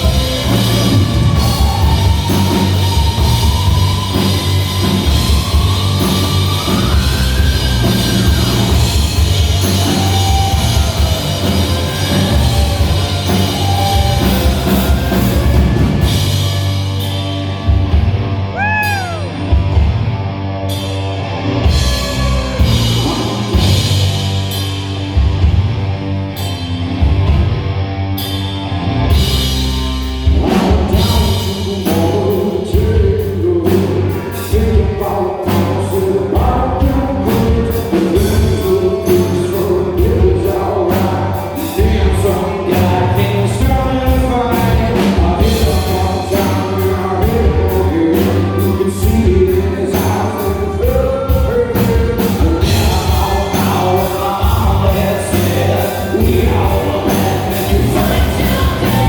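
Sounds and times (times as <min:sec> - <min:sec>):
person singing: 0:00.0 - 0:16.8, 0:18.6 - 0:19.4, 0:30.3 - 0:59.0
drums: 0:00.0 - 0:59.0
rock band playing: 0:00.0 - 0:59.0.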